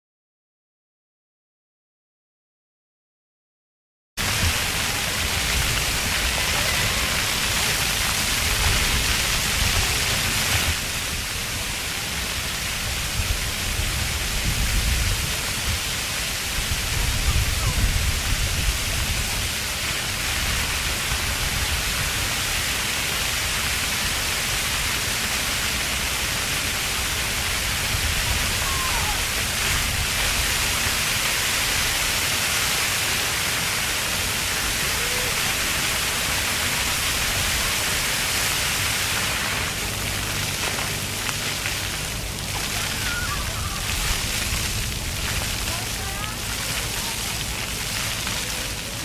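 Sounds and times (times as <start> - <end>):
fountain water jets splashing: 4.2 - 49.0
faint children calling: 28.5 - 29.4, 42.6 - 44.2.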